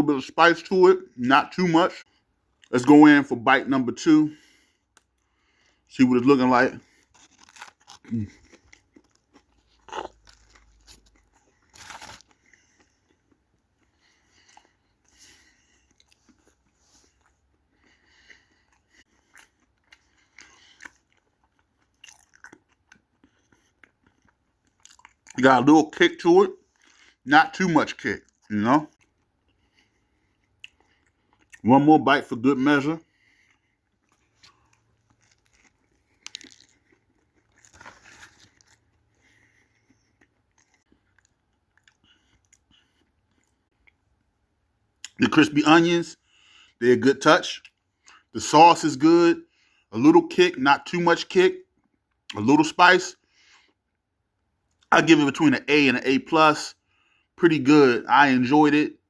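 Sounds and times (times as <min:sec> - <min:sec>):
person chewing crunchy food: 0:06.7 - 0:25.4, 0:27.9 - 0:31.6, 0:33.0 - 0:44.2
wet crunches and crackles: 0:34.2 - 0:39.0.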